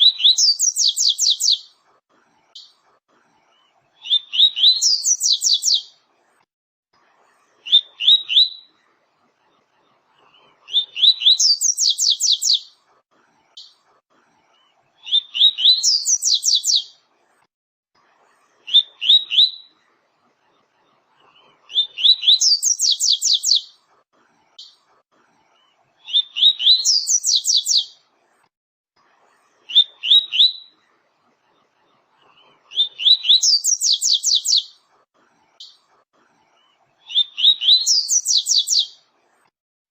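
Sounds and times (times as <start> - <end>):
bird singing whistled notes: 0.1 - 1.7, 4.0 - 5.9, 10.8 - 12.7, 15.1 - 16.9, 22.0 - 23.7, 26.1 - 27.9, 32.8 - 34.8, 37.1 - 39.0.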